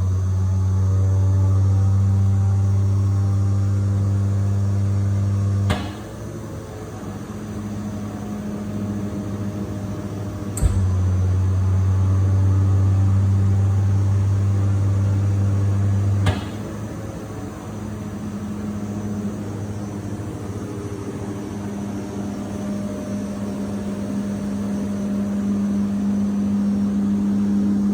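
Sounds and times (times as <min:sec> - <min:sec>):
air compressor humming: 0:10.4 - 0:11.9
sharp switch click: 0:10.6 - 0:11.2.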